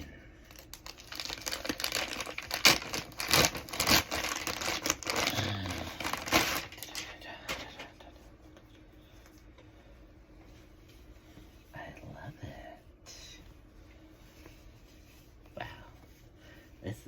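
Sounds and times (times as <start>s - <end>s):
package wrapping crinkling and tearing: 0.4s - 7.1s.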